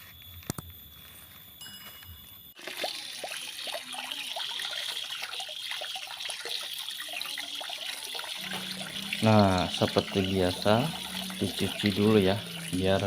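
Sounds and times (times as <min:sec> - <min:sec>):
running water splashing: 0:02.6 - 0:13.0.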